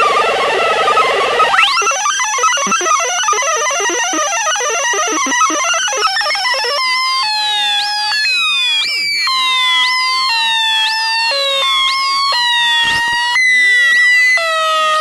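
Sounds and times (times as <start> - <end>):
held synth tones: 1.4 - 6.9
synthesizer blips: 1.4 - 6.9.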